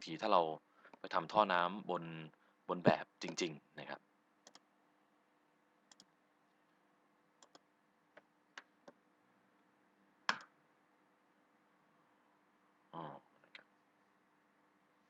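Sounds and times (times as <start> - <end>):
computer mouse clicking: 4.4 - 4.6, 5.9 - 6.1, 7.4 - 9.0, 10.3 - 10.5.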